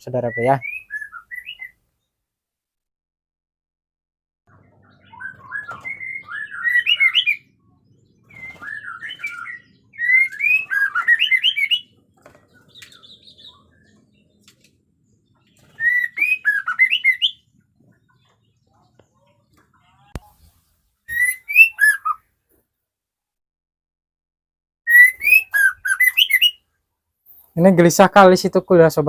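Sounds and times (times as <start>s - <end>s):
songbird whistling phrases: 0.2s - 1.8s, 4.7s - 11.9s, 15.6s - 17.5s, 21.1s - 22.2s, 24.9s - 26.6s.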